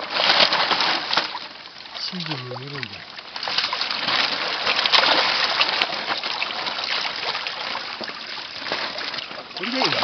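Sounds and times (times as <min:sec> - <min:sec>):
fish splashing in shallow water: 0:00.0 - 0:10.0.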